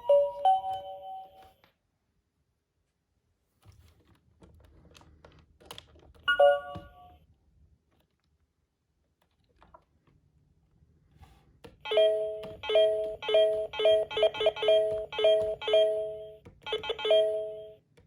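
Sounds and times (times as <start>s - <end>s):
electronic alarm beeping: 11.9s - 17.8s.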